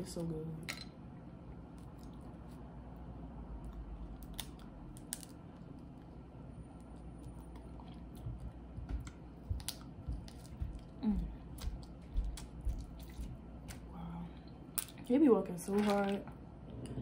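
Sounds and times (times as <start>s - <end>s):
person chewing food: 3.6s - 14.9s.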